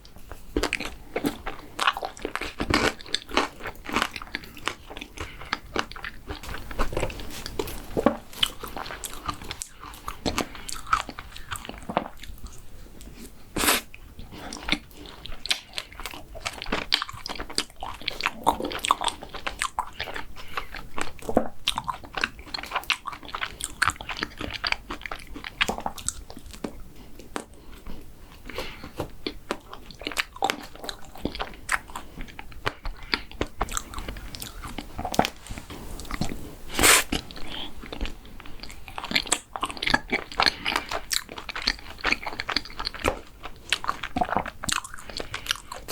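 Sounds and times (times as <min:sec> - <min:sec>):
person chewing crunchy food: 0:00.0 - 0:45.9
wet mouth clicks: 0:36.0 - 0:41.2.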